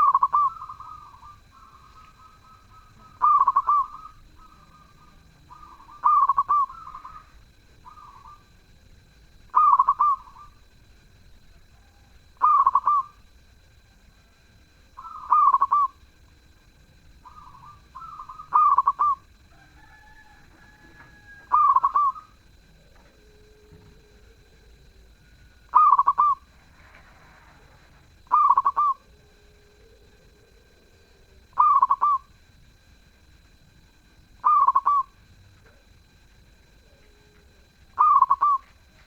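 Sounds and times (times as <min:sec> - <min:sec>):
dove cooing: 0:00.0 - 0:32.6, 0:33.5 - 0:39.0.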